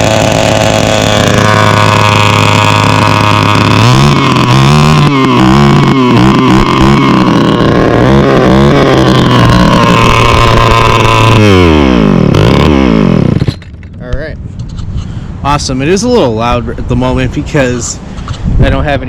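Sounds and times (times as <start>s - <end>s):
string trimmer engine revving: 0.0s - 13.6s.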